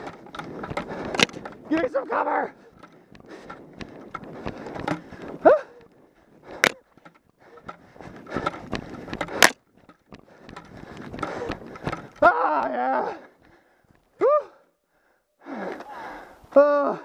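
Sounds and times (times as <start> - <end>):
scuffing and clattering of gear: 0.0 - 12.3.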